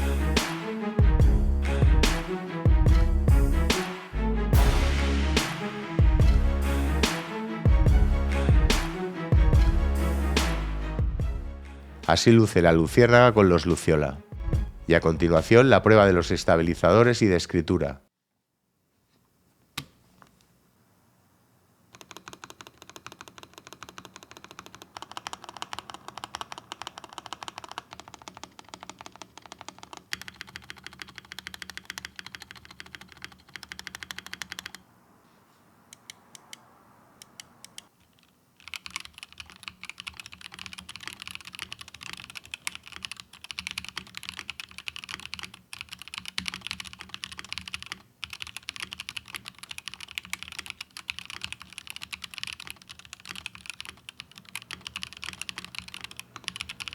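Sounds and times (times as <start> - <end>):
typing on mechanical keyboard: 21.9 - 34.8, 37.2 - 56.9.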